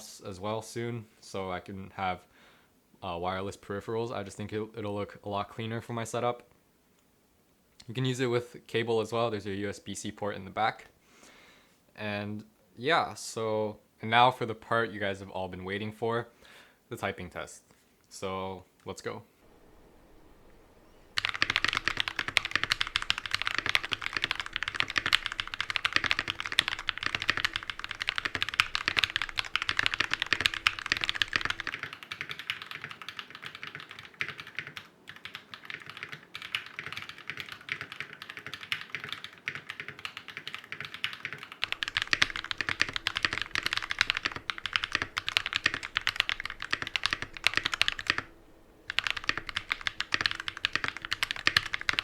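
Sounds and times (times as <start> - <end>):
mechanical keyboard typing: 21.2 - 48.3, 48.9 - 52.0.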